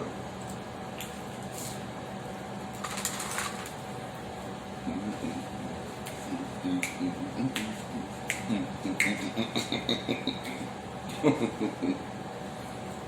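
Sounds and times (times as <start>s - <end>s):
steady low hum: 0.0s - 13.0s
person humming: 4.8s - 12.0s.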